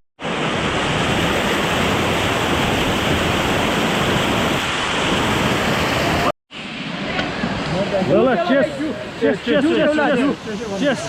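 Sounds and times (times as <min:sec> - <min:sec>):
waterfall rushing: 0:00.2 - 0:11.0.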